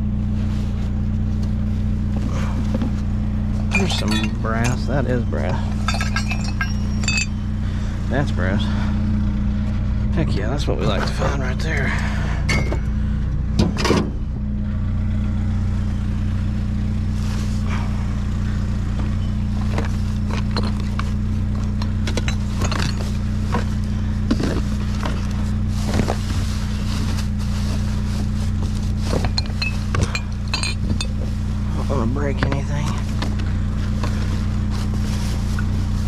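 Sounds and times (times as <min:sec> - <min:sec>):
engine idling: 0:00.0 - 0:36.0
scrap metal clinking: 0:02.3 - 0:07.6, 0:10.8 - 0:13.0, 0:19.1 - 0:36.0.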